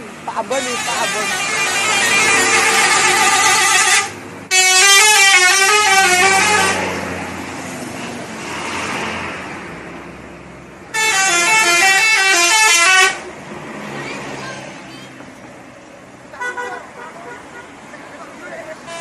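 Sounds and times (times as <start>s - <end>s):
street noise: 0.0s - 19.0s
multi-tone bus horn tune: 0.5s - 7.0s, 10.9s - 13.3s, 16.4s - 17.8s, 18.8s - 19.0s.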